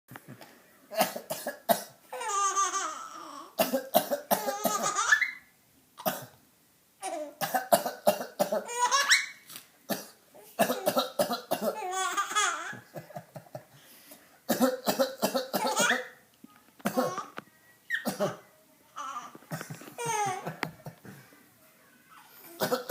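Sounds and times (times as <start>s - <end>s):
small child laughing: 19.8s - 20.7s.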